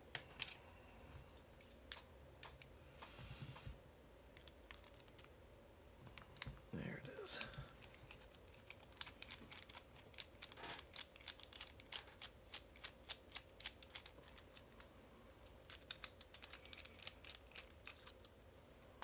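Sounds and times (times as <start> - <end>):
padlock parts clicking and tapping: 7.4 - 14.8, 15.6 - 18.6.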